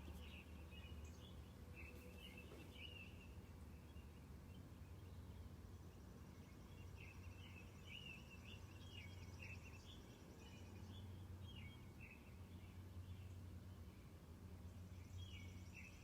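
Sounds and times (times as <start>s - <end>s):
robins singing: 0.0s - 14.1s.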